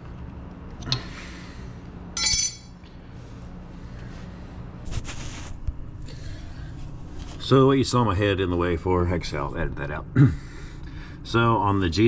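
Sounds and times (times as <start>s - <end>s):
steady low hum: 0.0s - 12.0s
metallic clink: 2.2s - 2.8s
rustling scrape: 4.9s - 5.6s.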